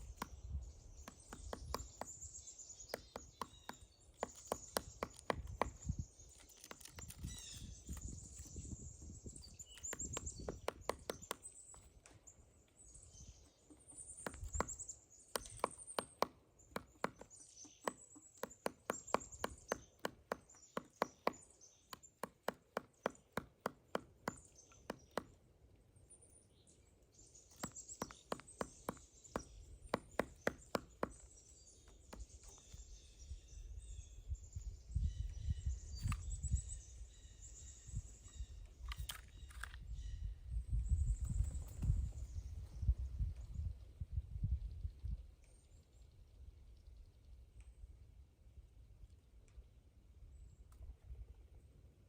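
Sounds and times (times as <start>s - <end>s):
woodpecker pecking wood: 0.0s - 8.6s, 9.3s - 12.2s, 13.6s - 25.5s, 27.4s - 33.0s, 38.2s - 39.8s.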